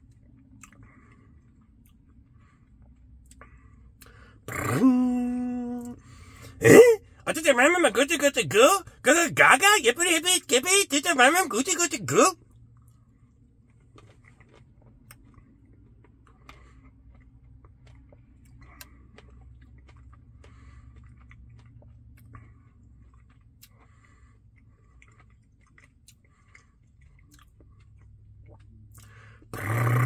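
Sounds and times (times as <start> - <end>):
close chewing and mouth smacks: 0.0 - 4.6, 12.4 - 29.9
low steady hum: 0.0 - 30.0
loud voice: 4.5 - 6.0, 6.6 - 12.4.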